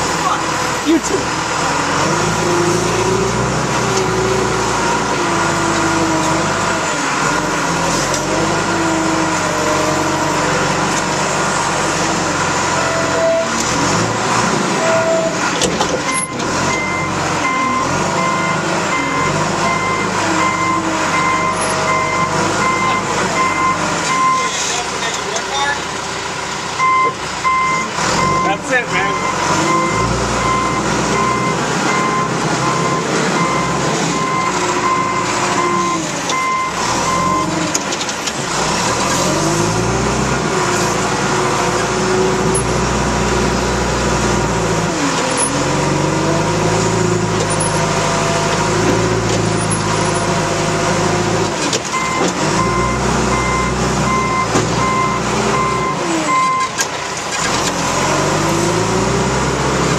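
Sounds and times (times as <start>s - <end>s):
diesel engine revving: 0.0s - 59.9s
backup alarm beeping: 16.1s - 24.5s, 26.8s - 28.5s, 29.1s - 37.5s, 51.9s - 56.7s.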